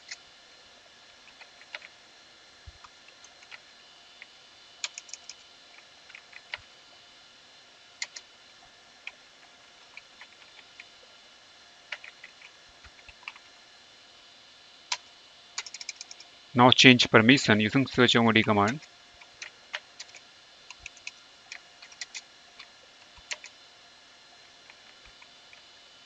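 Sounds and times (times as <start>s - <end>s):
faint steady hiss: 0.0s - 26.0s
computer keyboard typing: 4.8s - 5.4s, 15.6s - 16.2s, 18.6s - 22.2s, 23.2s - 23.5s.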